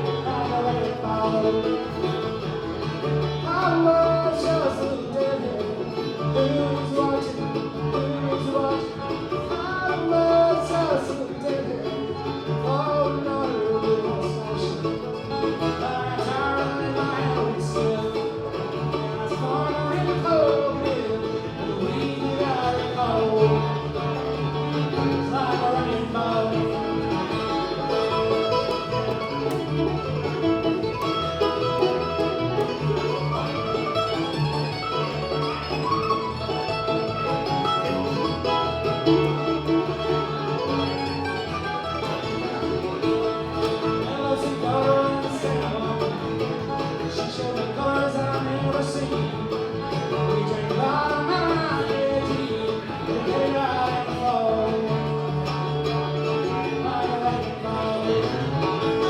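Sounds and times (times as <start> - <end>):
person singing: 0.0 - 2.2, 3.3 - 29.6, 43.2 - 59.0
picked acoustic string instruments: 0.0 - 59.0.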